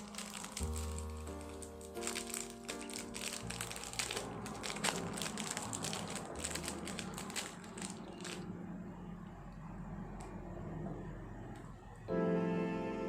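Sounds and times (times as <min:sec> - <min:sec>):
plastic packaging crinkling: 0:00.0 - 0:08.7.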